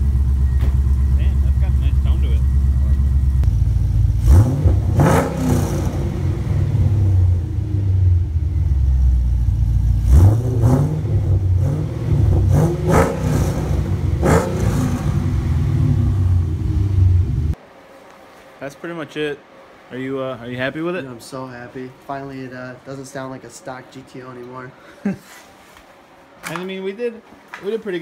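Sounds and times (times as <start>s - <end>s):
car engine idling deep drone: 0.0s - 17.6s
engine throttle blips: 0.0s - 17.6s.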